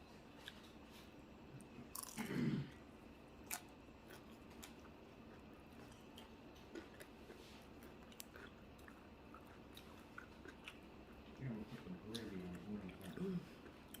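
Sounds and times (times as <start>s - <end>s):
steady low hum: 0.0s - 14.0s
person chewing: 1.9s - 2.3s, 3.5s - 14.0s.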